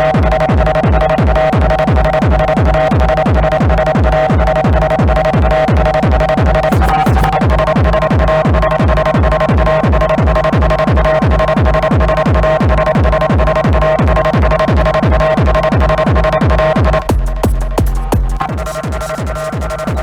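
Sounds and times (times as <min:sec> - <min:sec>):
techno kick drum: 0:00.0 - 0:20.0
held synth tones: 0:06.6 - 0:07.6.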